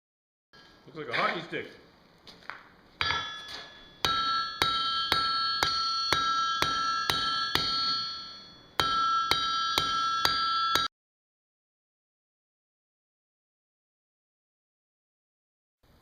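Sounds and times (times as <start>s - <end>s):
anvil ringing: 3.0s - 10.9s
hammer striking steel on anvil: 3.0s - 10.9s.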